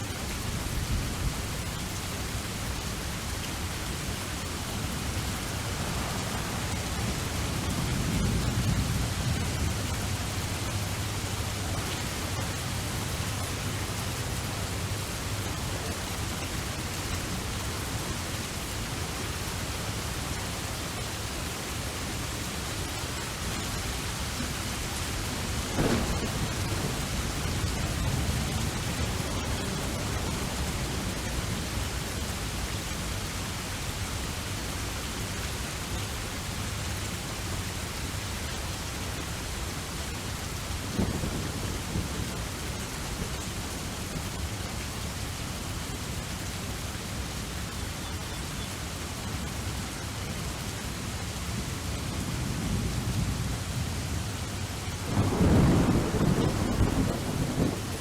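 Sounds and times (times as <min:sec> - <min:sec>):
steady rain hiss: 0:00.0 - 0:58.0
low rumble of thunder: 0:00.3 - 0:20.6, 0:23.4 - 0:33.2, 0:40.6 - 0:44.5, 0:51.8 - 0:58.0.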